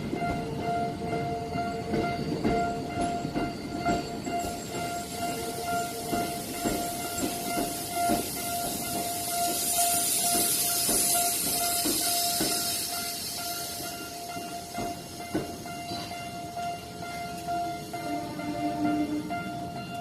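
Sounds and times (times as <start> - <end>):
level-crossing warning bell: 0.0 - 20.0
train wheels clacking on rails: 0.0 - 20.0
high hiss: 4.8 - 16.3.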